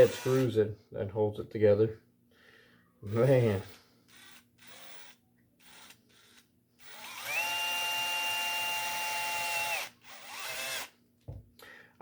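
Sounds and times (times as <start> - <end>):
electric power drill whining: 0.0 - 0.4, 3.5 - 10.9.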